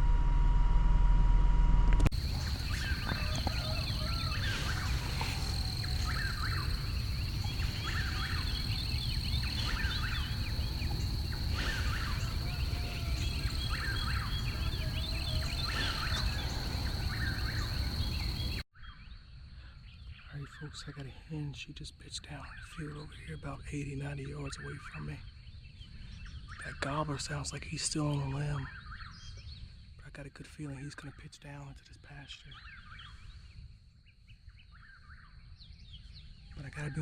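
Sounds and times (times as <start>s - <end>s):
low wind rumble: 0.0s - 18.6s
bird calling repeatedly: 2.1s - 19.0s
turkey gobbling: 2.2s - 18.3s.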